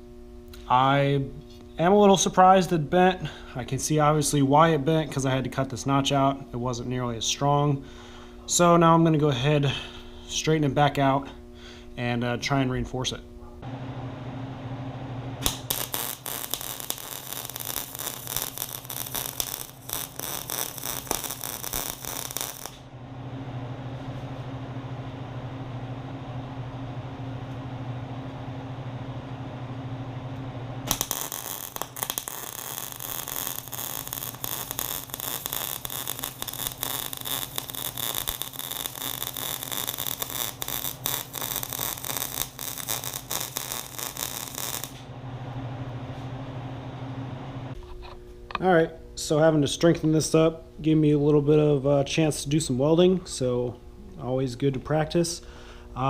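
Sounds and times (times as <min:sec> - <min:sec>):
electrical hum: 0:00.0 - 0:56.0
welding arc crackling: 0:15.4 - 0:22.9, 0:30.8 - 0:45.1.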